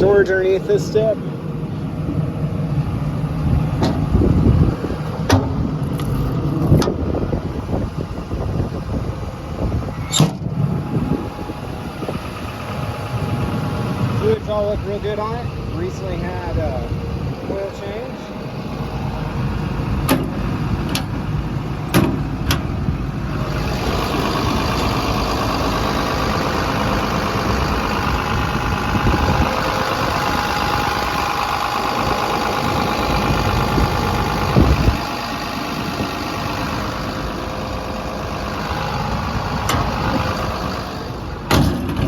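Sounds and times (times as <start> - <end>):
excavator diesel engine idling: 0.0 - 42.0
thump: 41.5 - 42.0.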